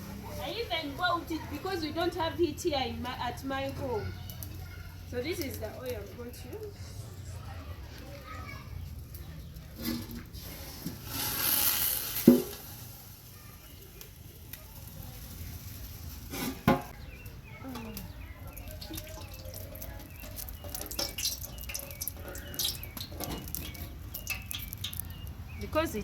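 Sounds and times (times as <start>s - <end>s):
oil pouring into a pot: 9.9s - 13.6s, 18.7s - 25.1s.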